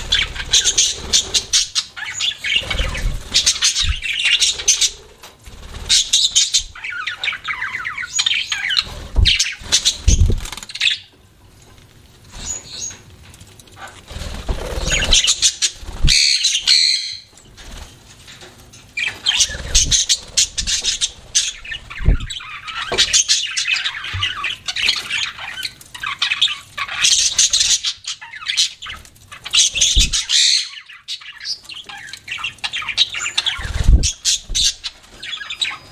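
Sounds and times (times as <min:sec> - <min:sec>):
budgerigars chattering and squawking: 0:00.0 - 0:11.1, 0:13.8 - 0:17.3, 0:19.0 - 0:35.9.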